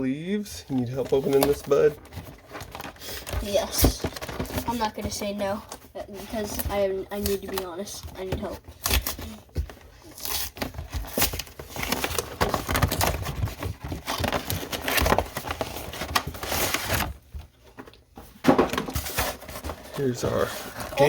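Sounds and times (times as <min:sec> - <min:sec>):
plastic packaging crinkling and tearing: 0:00.7 - 0:17.3.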